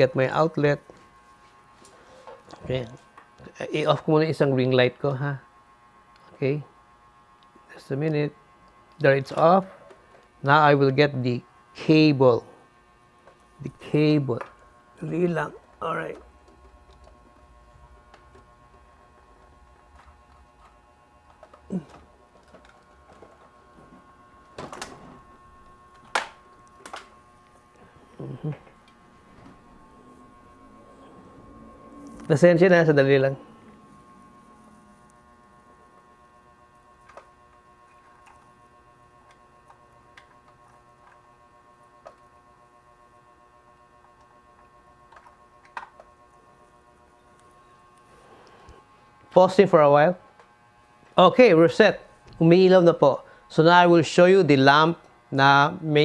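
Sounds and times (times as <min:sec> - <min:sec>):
steady electrical hum: 0:00.0 - 0:56.0
electric cord and plug clattering: 0:14.0 - 0:14.7, 0:16.1 - 0:27.8, 0:28.5 - 0:30.6, 0:34.0 - 0:42.4, 0:44.0 - 0:48.7
small clicks and knocks: 0:45.1 - 0:46.2.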